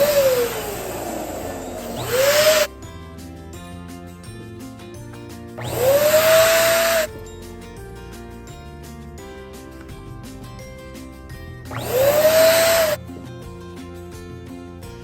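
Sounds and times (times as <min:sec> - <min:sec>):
electric balloon pump whine: 0:00.0 - 0:02.7, 0:05.6 - 0:07.1, 0:11.7 - 0:13.0
background music: 0:00.1 - 0:15.0.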